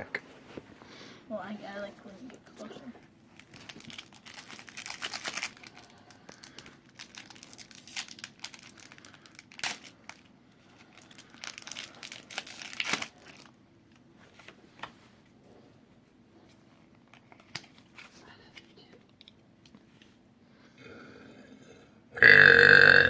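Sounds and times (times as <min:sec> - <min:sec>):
foil wrapper crinkling and tearing: 0:03.3 - 0:13.6, 0:17.1 - 0:18.2.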